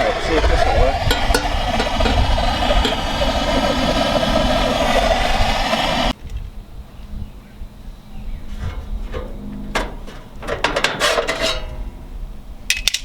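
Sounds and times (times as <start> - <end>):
fire-starting tool running: 0.0 - 6.2.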